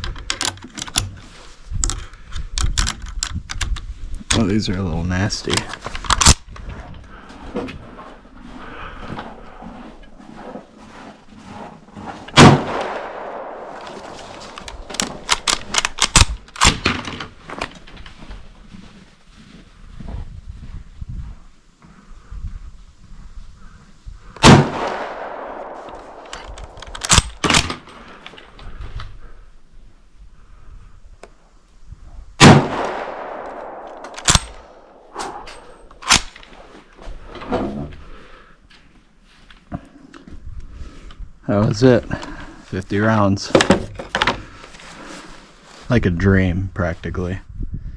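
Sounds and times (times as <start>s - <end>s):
rifle shot with echo: 12.3s - 15.5s, 24.4s - 27.7s, 32.4s - 35.5s
rifle bolt clicking: 13.8s - 16.8s, 25.8s - 27.8s, 32.8s - 36.5s.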